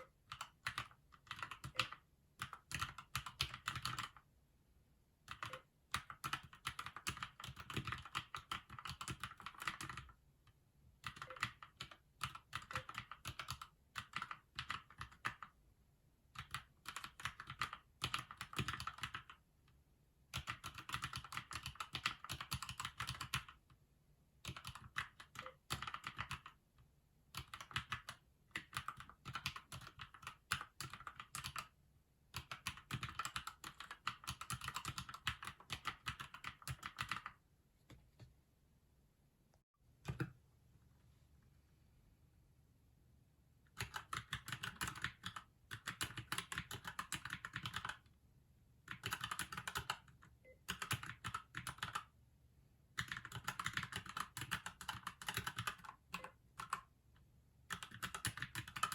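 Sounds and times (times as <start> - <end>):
mechanical keyboard typing: 0.0 - 4.2, 5.3 - 10.2, 11.0 - 15.6, 16.4 - 19.4, 20.3 - 23.6, 24.4 - 26.6, 27.3 - 31.8, 32.4 - 37.4, 43.7 - 48.1, 48.9 - 52.1, 53.0 - 56.9, 57.7 - 58.9.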